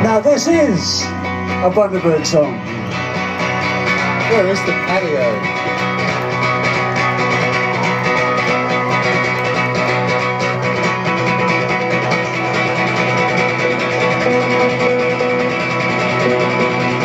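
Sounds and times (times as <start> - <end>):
guitars playing chord pattern: 0.0 - 17.0
live band playing: 0.0 - 17.0.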